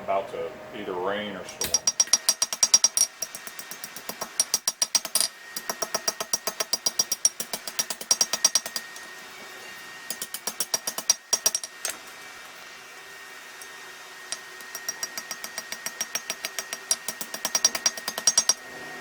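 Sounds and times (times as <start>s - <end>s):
hammer striking steel on anvil: 1.5s - 8.9s, 10.1s - 12.0s, 14.3s - 18.6s.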